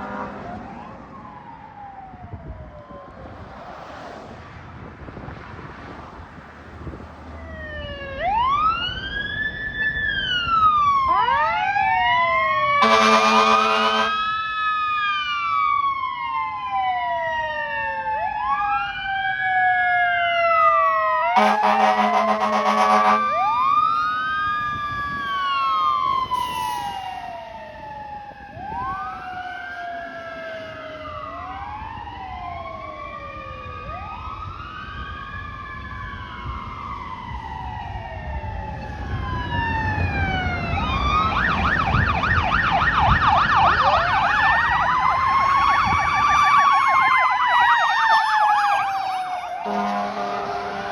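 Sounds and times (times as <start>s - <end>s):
air horn blasts: 0.0s - 0.6s, 12.8s - 14.3s, 21.4s - 23.5s, 49.6s - 50.9s
fire truck sirens wailing: 0.0s - 4.0s, 6.7s - 50.9s.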